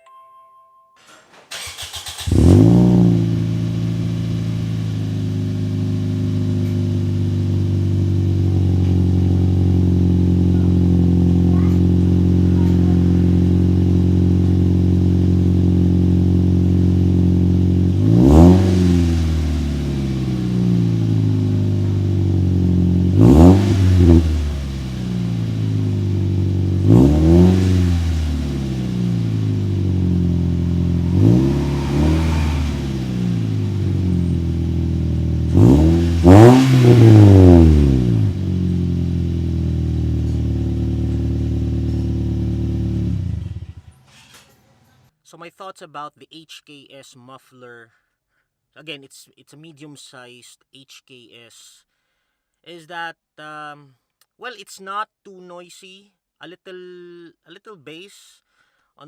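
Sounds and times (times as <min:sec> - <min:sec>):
car engine idling and revving: 0:01.4 - 0:44.3.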